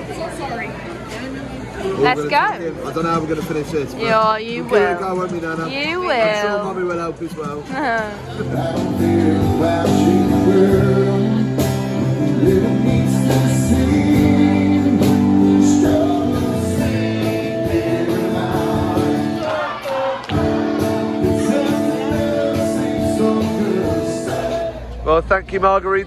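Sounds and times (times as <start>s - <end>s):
person singing over sustained chords: 8.4s - 19.4s, 20.6s - 24.9s.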